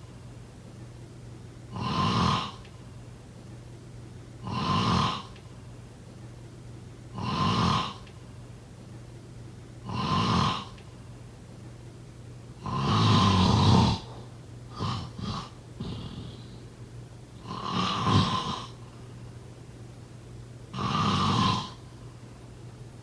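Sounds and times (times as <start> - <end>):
person snoring: 7.2 - 8.0, 9.9 - 10.8, 12.6 - 16.7, 17.4 - 18.8, 20.7 - 21.8.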